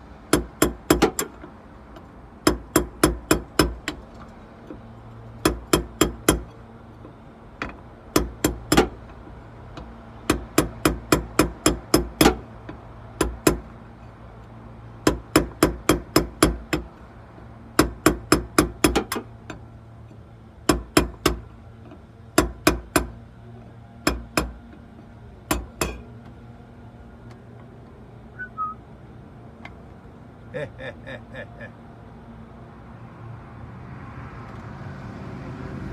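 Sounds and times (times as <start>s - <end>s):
hammer on metal: 0.3s - 1.4s, 2.4s - 4.0s, 5.4s - 6.6s, 7.6s - 9.0s, 10.3s - 12.4s, 13.2s - 13.7s, 15.0s - 16.9s, 17.8s - 19.3s, 20.7s - 21.5s, 22.4s - 23.2s, 24.0s - 24.7s, 25.5s - 26.1s.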